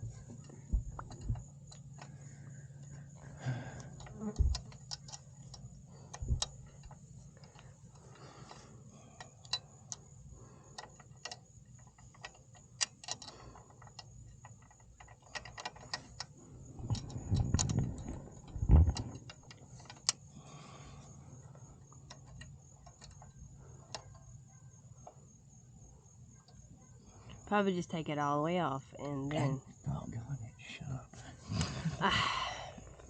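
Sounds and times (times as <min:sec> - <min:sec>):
handling rumble: 0:00.0 - 0:10.8, 0:13.3 - 0:21.7
wrench clicking on metal: 0:10.8 - 0:20.2.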